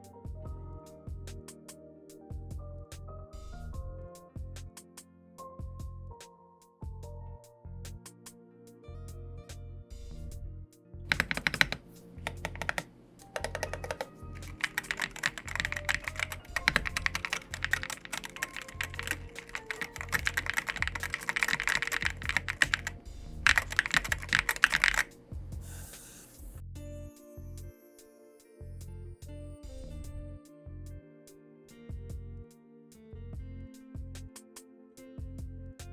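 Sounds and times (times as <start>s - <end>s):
keyboard key clacks: 11.1s - 25.1s.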